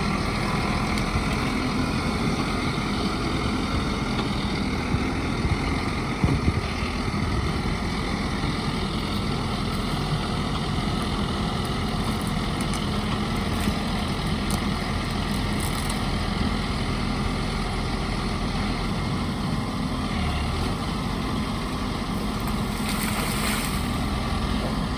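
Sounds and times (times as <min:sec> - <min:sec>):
backhoe engine running: 0:00.0 - 0:24.9.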